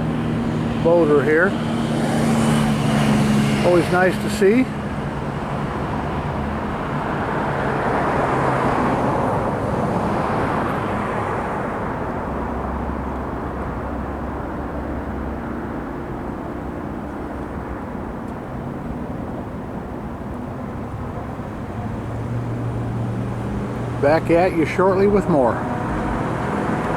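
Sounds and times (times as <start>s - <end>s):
passing vehicle drone: 0.0s - 26.9s.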